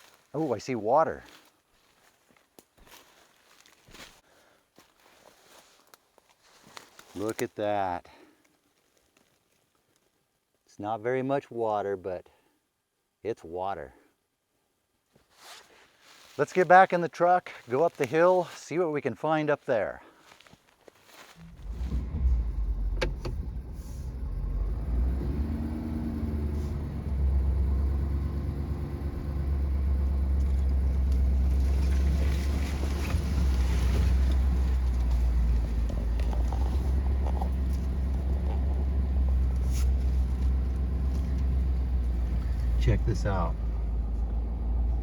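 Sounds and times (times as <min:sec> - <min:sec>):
truck engine rumble: 0:21.4 - 0:45.0.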